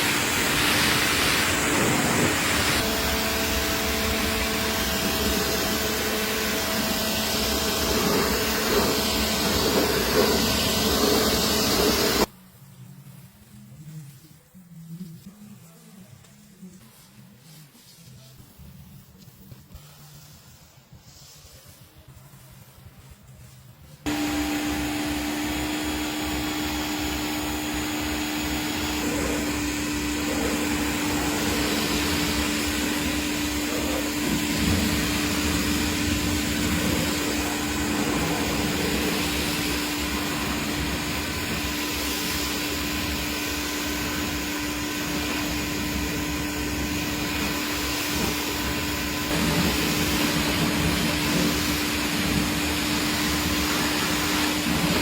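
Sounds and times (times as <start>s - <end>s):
machine hissing: 0.0s - 12.3s, 24.1s - 55.0s
machine motor humming: 0.0s - 12.3s, 24.1s - 55.0s.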